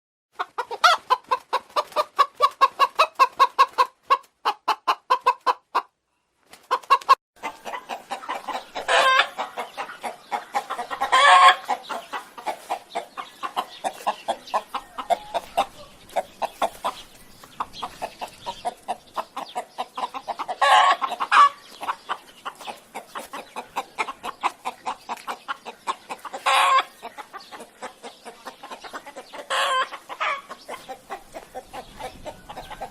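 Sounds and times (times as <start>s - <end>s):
chickens clucking: 0.4s - 32.9s
chicken squawks: 6.7s - 17.0s, 19.9s - 32.9s.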